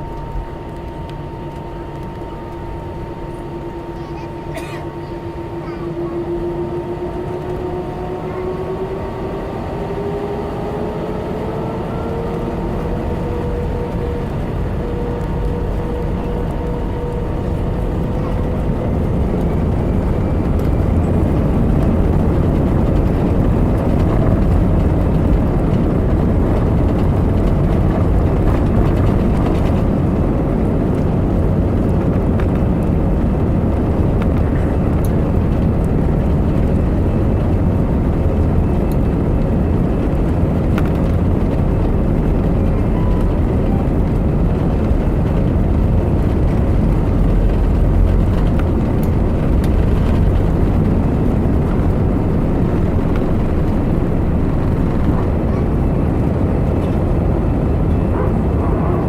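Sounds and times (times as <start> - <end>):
aircraft cabin engine rumble: 0.0 - 59.0.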